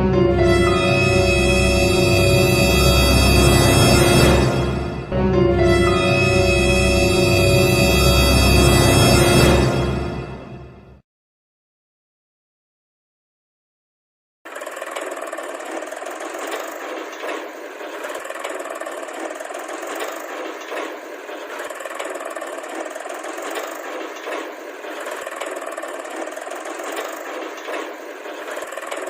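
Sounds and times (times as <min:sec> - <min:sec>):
toy vehicle mechanical drone: 0:01.3 - 0:04.4, 0:14.5 - 0:29.0.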